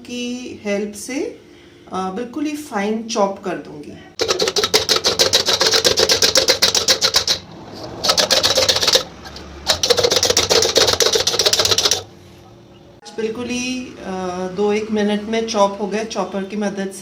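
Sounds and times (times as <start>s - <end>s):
vegetable chopper clicking: 4.2s - 12.1s.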